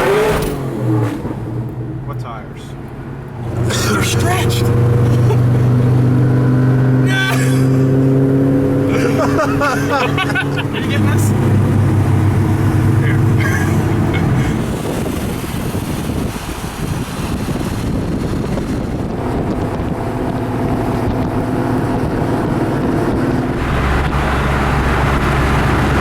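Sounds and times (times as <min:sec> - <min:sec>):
car engines running at low revs: 0:00.0 - 0:26.0
deep engine rumble: 0:00.8 - 0:26.0
wind buffeting microphone: 0:08.6 - 0:26.0.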